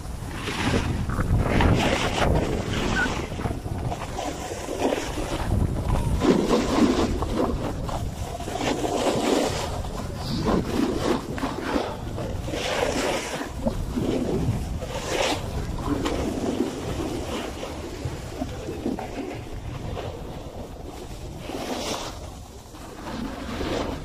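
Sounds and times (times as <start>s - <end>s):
snowboard scraping over snow: 0.0s - 24.0s
wind rushing over microphone: 0.0s - 24.0s.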